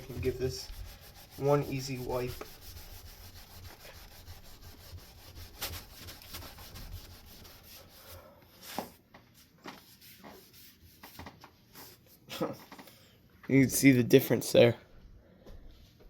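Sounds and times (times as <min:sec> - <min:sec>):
wipe rubbing fan blade: 0:00.0 - 0:08.2.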